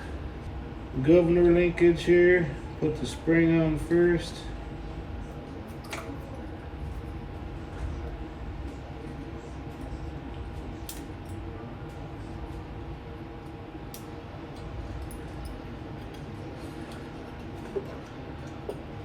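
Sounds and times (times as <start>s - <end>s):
low background hum: 0.0s - 19.0s
light clicks of small parts: 10.8s - 11.4s.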